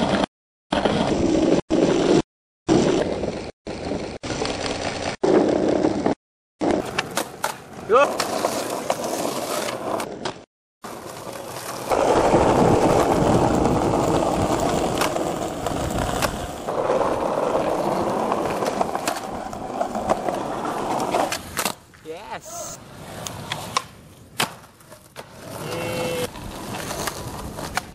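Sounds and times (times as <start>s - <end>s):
skateboard wheels rolling: 0.0s - 27.9s
skateboard clacks: 23.2s - 27.9s.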